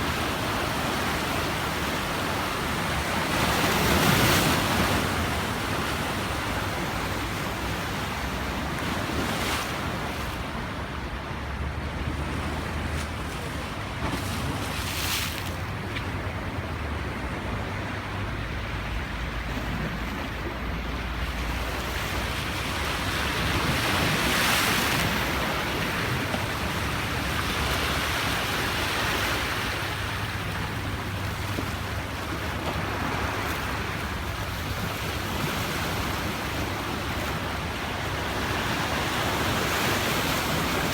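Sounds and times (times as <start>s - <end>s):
sea waves washing onto beach: 0.0s - 40.9s.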